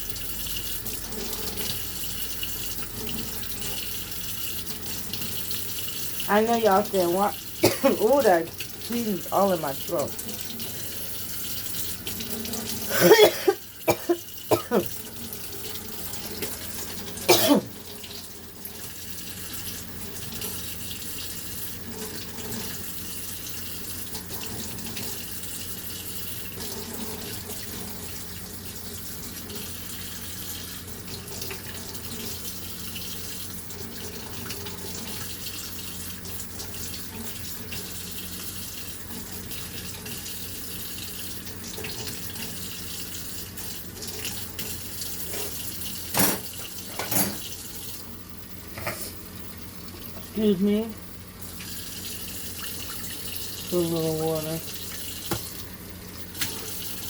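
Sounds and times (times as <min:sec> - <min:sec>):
person coughing: 0:07.6 - 0:08.1, 0:12.9 - 0:14.9, 0:17.2 - 0:17.7
tap running into sink: 0:54.9 - 0:55.7.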